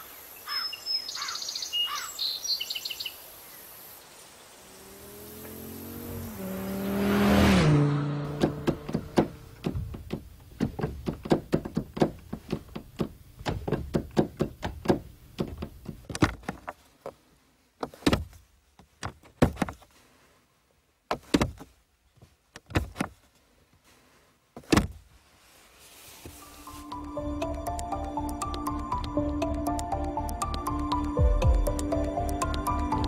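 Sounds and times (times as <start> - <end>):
sharp knocks and clicks: 8.3 - 16.8, 17.8 - 18.4, 19.0 - 19.8, 27.0 - 32.9.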